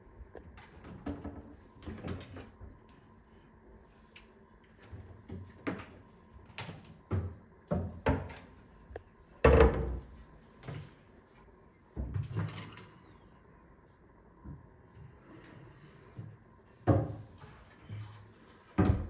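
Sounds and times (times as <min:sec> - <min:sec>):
cabinet doors and drawers knocking: 0:09.4 - 0:10.1.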